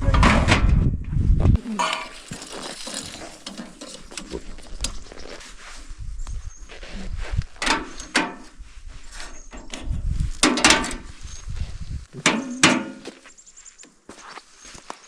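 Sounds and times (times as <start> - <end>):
metal scraping: 1.6 - 5.4
steel clanking knocks: 1.8 - 5.0, 12.2 - 13.1.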